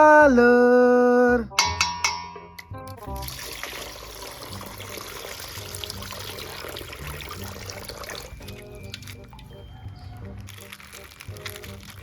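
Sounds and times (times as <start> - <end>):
water pouring and trickling: 2.9 - 12.0.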